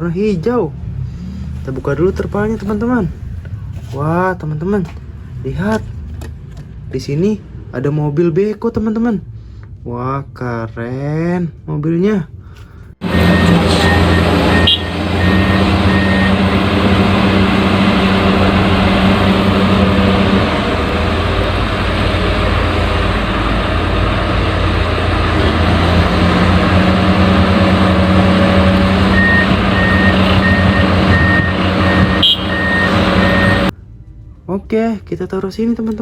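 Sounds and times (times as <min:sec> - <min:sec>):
reversing alarm beeping: 0:13.0 - 0:18.4, 0:29.1 - 0:33.7
heavy vehicle engine running: 0:13.0 - 0:34.3.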